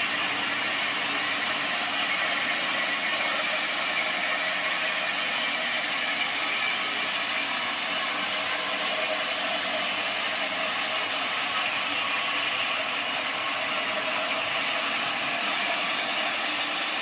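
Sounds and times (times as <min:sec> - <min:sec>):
sawmill machinery running: 0:00.0 - 0:17.0.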